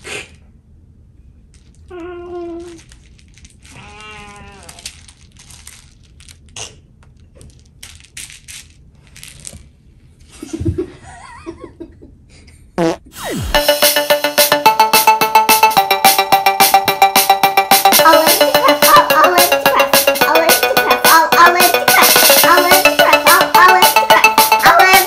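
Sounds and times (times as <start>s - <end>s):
sharp sound: 12.8s - 25.0s.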